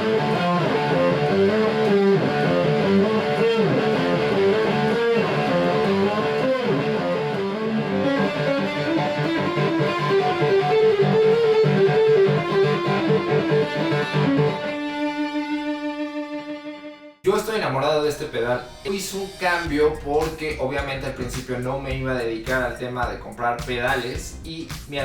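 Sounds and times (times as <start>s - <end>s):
distorted electric guitar riffing: 0.0s - 16.9s.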